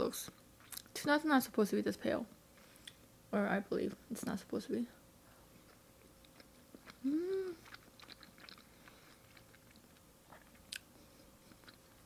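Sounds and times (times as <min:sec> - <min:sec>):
wet chewing mouth clicks: 0:05.7 - 0:12.0.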